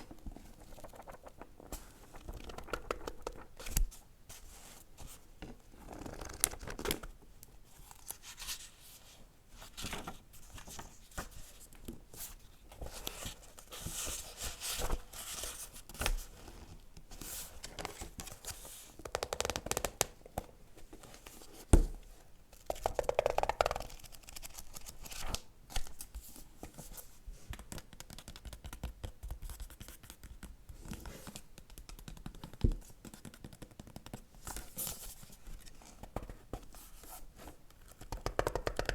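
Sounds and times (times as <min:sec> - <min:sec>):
paper pages rustling: 0:00.1 - 0:03.9.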